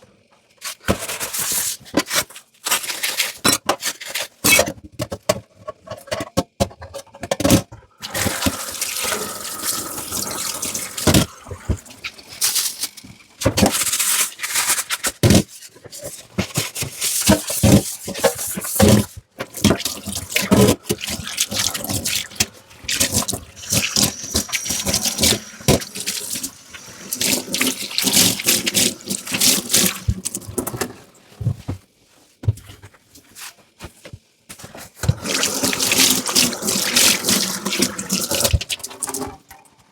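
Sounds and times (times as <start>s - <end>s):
tap water splashing: 8.0s - 13.6s, 19.4s - 30.9s, 35.0s - 39.3s.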